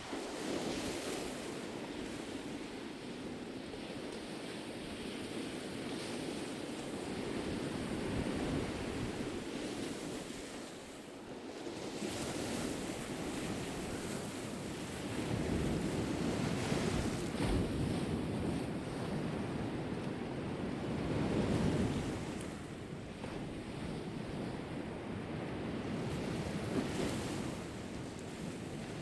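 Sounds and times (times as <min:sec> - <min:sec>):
sea waves breaking on shore: 0:00.0 - 0:29.0
wind buffeting microphone: 0:11.6 - 0:29.0.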